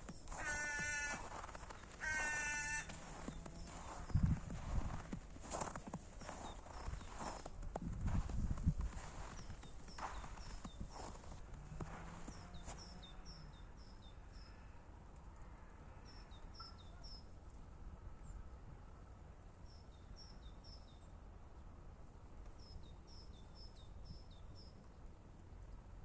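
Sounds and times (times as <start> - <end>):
songbird chirping: 0.0 - 7.4, 9.0 - 14.6
faint low outdoor rumble: 0.0 - 26.0.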